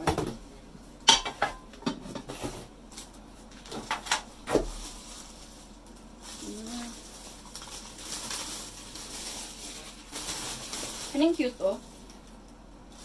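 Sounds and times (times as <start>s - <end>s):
pots and lids clinking: 1.1s - 1.6s.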